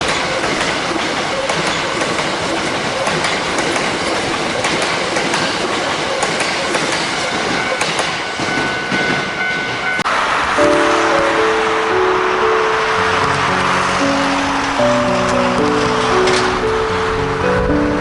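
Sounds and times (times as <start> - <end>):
train wheels clattering: 0.0 - 17.0
steady high tone: 8.3 - 18.0
music: 10.6 - 18.0.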